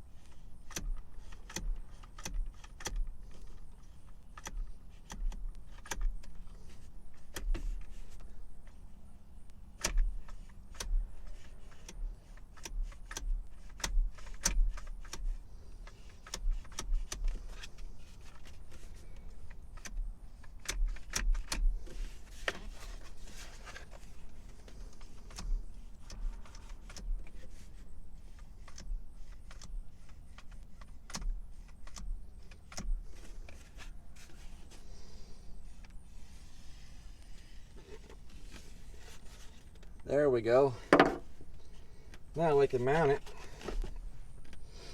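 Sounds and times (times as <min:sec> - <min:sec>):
seatbelt mechanism clicks and rattles: 0:00.1 - 0:40.1, 0:40.9 - 0:44.9
dull handling thumps: 0:40.5 - 0:41.7.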